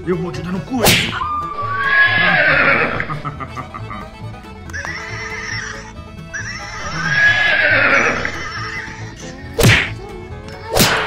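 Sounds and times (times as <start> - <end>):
background music: 0.0 - 11.0
sharp crack: 0.8 - 1.4, 9.6 - 10.0, 10.7 - 11.0
horse whinny: 1.2 - 3.4, 4.7 - 9.4.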